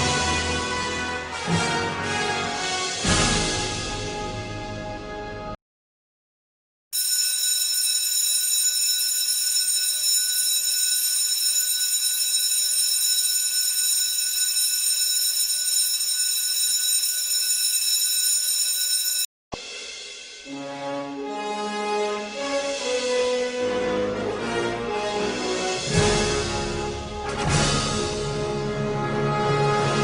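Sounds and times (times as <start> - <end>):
electric school bell ringing: 7.0 - 19.3.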